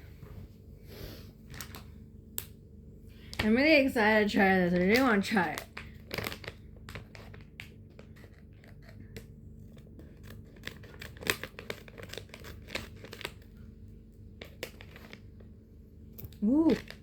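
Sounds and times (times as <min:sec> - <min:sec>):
plastic wrapper crinkling: 0:04.6 - 0:08.9, 0:09.8 - 0:13.6, 0:14.4 - 0:15.4, 0:16.2 - 0:17.0
scissors snipping plastic: 0:10.0 - 0:13.4.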